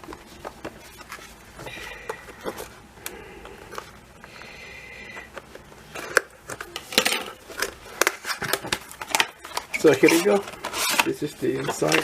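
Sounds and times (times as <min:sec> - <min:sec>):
squeaky friction sound: 0:09.5 - 0:12.0.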